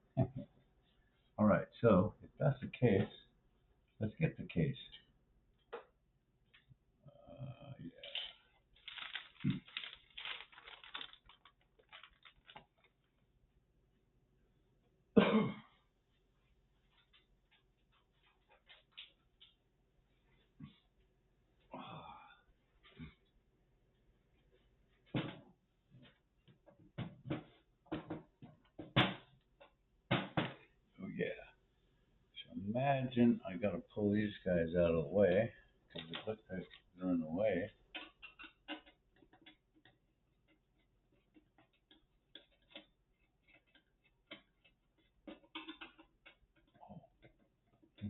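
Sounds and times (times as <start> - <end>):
handling clicks and rustles: 8.0 - 13.0.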